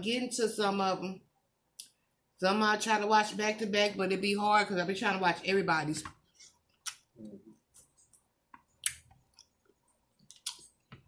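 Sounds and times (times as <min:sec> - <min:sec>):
chewing with mouth clicks: 0:06.8 - 0:10.9.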